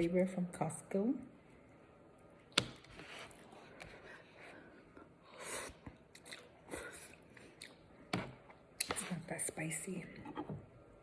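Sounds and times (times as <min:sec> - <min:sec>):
person chewing noodles: 0:05.6 - 0:07.9.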